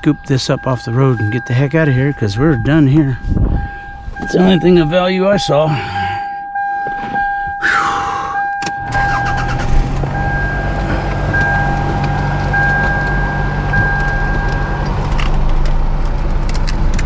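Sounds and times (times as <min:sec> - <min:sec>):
high electronic warning tone: 0:00.0 - 0:14.9
truck engine starting and idling: 0:07.2 - 0:17.0.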